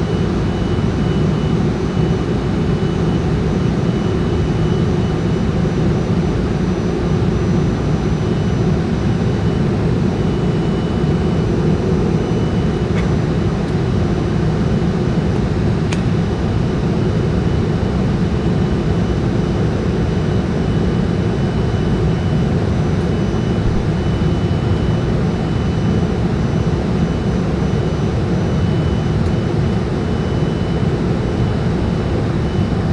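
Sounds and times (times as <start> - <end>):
faint steady whine: 0.0 - 32.9
jet engine cabin noise: 0.0 - 32.9.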